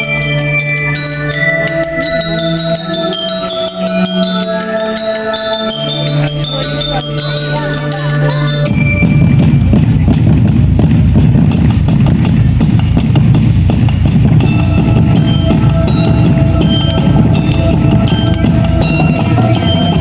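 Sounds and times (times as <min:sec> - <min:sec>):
glockenspiel bell tones: 0:00.0 - 0:11.0, 0:11.6 - 0:20.0
drumline bass drums and snares: 0:08.6 - 0:20.0
held low brass note: 0:14.4 - 0:20.0.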